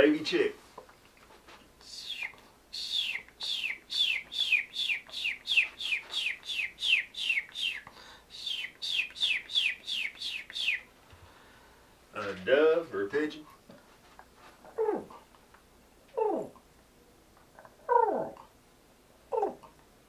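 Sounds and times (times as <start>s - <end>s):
man imitating chick peeps: 1.8s - 10.8s.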